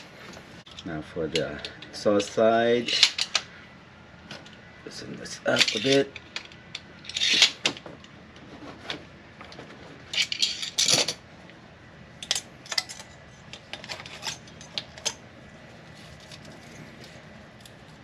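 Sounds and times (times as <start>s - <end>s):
hand tools clinking on metal: 5.5s - 6.3s.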